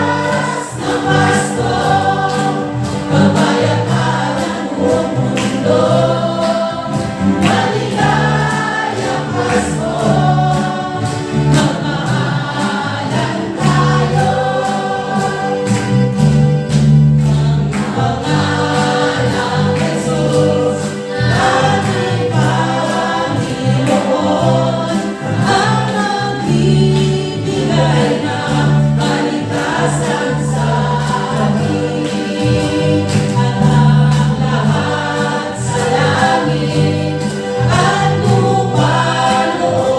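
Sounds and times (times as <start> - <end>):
choir singing a carol: 0.0 - 39.9.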